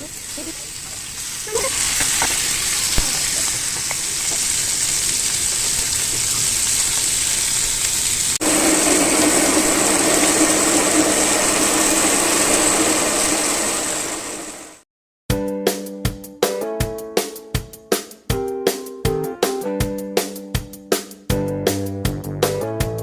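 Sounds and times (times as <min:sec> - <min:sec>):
meat sizzling on a grill: 0:00.0 - 0:14.6.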